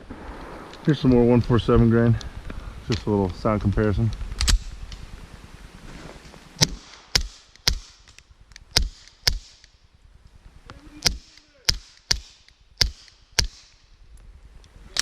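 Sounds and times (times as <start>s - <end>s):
suppressed pistol shots: 6.6s - 9.8s, 11.0s - 13.8s.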